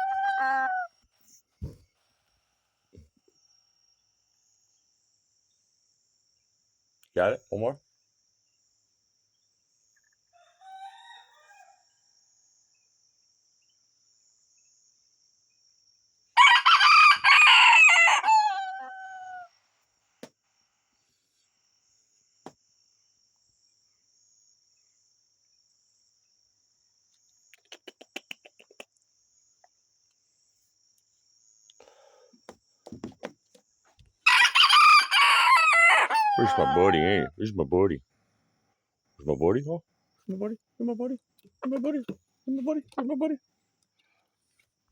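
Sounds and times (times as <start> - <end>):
rooster crowing: 0.0 - 0.9, 10.3 - 12.0, 16.4 - 19.5, 34.2 - 37.3.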